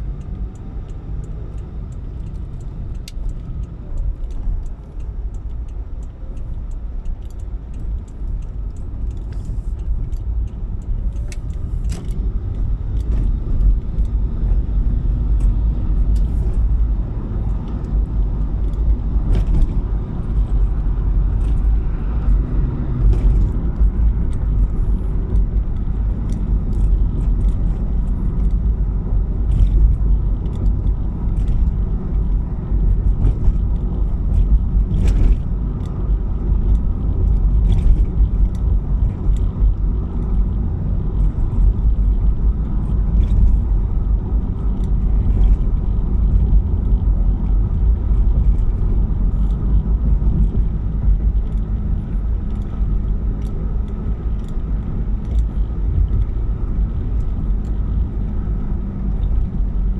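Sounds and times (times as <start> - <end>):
car road and engine rumble: 0.0 - 59.9
small clicks and rattles: 41.1 - 59.6.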